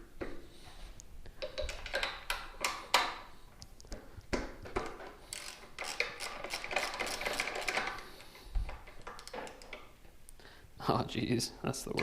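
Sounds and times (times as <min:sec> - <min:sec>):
hand ratchet clicking: 0:05.3 - 0:08.0.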